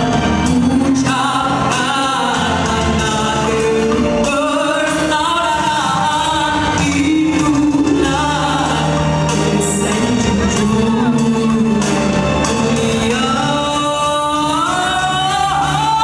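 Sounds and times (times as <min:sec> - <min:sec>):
vocal group singing in harmony: 0:00.0 - 0:16.0.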